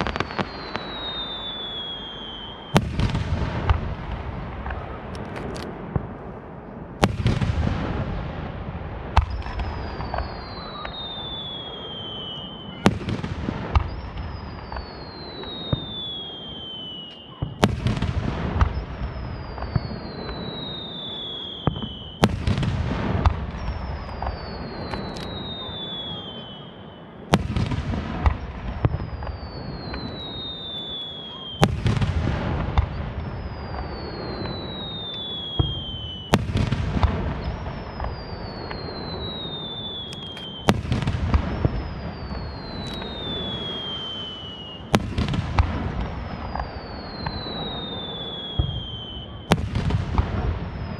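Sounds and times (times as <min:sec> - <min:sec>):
falling firework whistle: 0:00.0 - 0:05.7, 0:09.1 - 0:50.9
fireworks bursting: 0:00.0 - 0:50.9.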